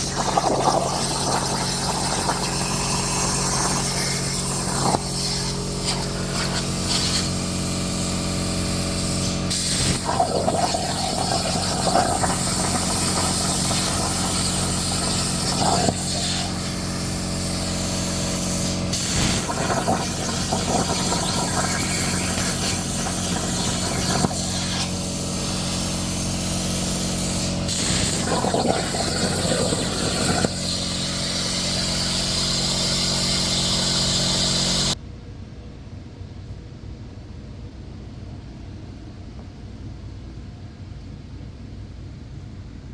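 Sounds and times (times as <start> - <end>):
constant hum: 0.0 - 26.3
plasma cutter hissing arc: 0.0 - 35.0.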